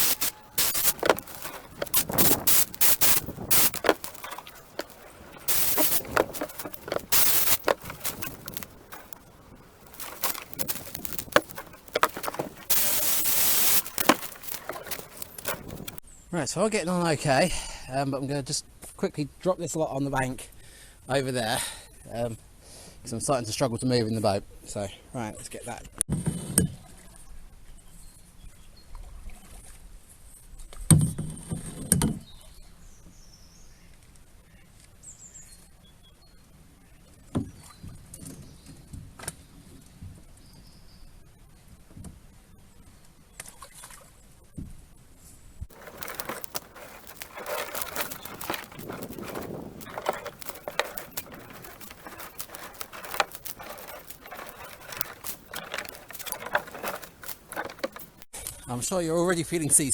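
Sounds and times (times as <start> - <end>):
branches rustling and knocking: 0.0 - 16.0, 45.7 - 58.3.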